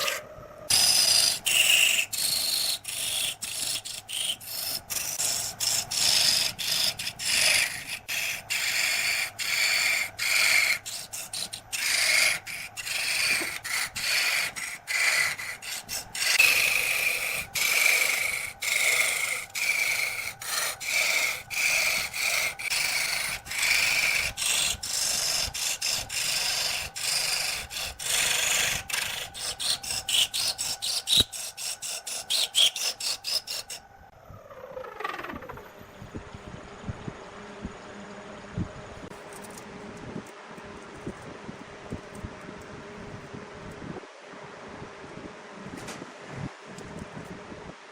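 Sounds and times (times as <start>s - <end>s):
tool rasping on wood: 0.0s - 33.8s.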